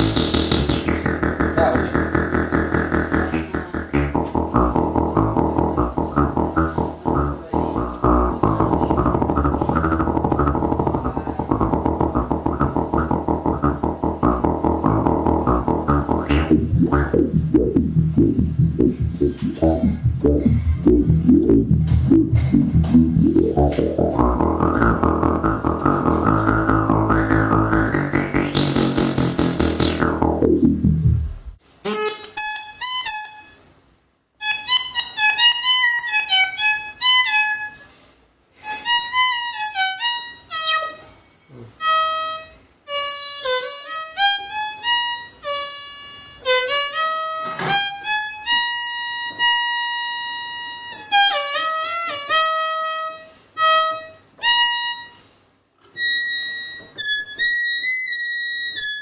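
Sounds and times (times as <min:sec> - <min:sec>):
synthesizer falling sweep: 0:00.0 - 0:31.6
synthesizer reedy lead melody: 0:00.0 - 0:31.6.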